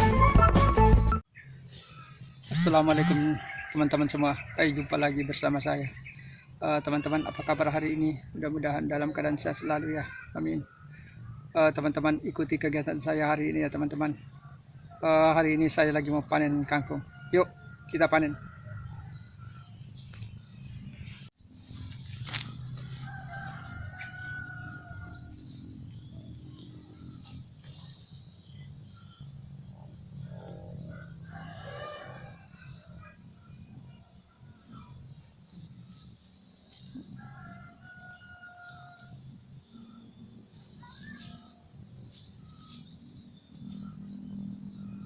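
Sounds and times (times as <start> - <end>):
crickets droning: 1.3 - 45.0
insect held calls: 1.3 - 45.0.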